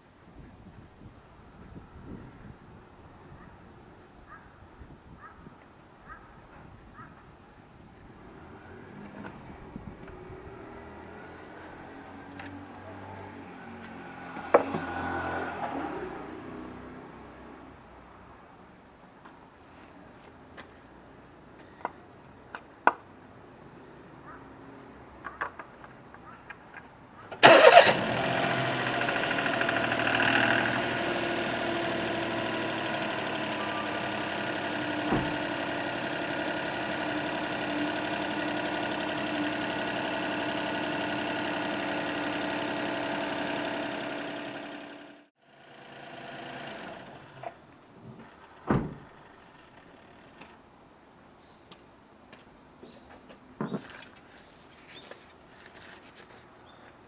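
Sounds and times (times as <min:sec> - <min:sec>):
car engine starting and idling: 0:27.3 - 0:47.6
thump: 0:35.1 - 0:35.4, 0:48.1 - 0:49.1.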